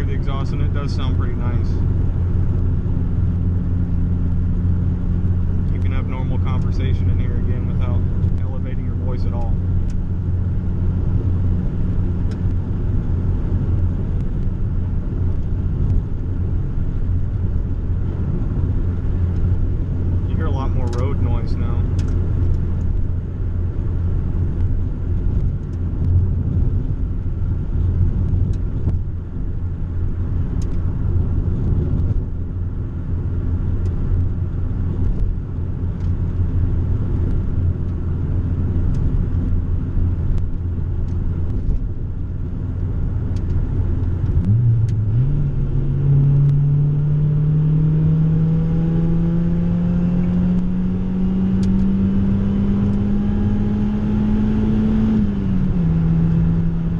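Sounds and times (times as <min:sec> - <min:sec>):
car engine drone: 0:00.0 - 0:56.9
road noise: 0:00.0 - 0:56.9.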